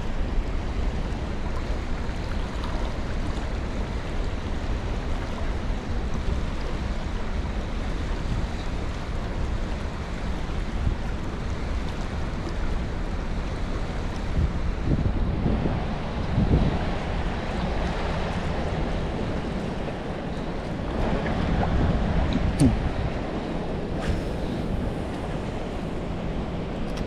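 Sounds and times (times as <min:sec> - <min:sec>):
wind buffeting microphone: 0:13.9 - 0:27.0.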